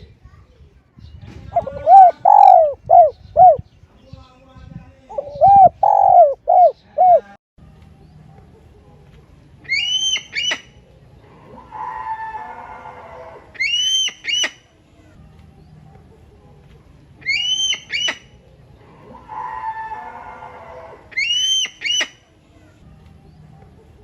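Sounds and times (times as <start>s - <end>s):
bird cooing: 1.6s - 3.6s, 5.1s - 7.3s
high bird call: 1.6s - 3.6s, 5.1s - 7.3s, 9.7s - 10.8s, 11.5s - 14.6s, 17.2s - 18.4s, 19.0s - 22.2s.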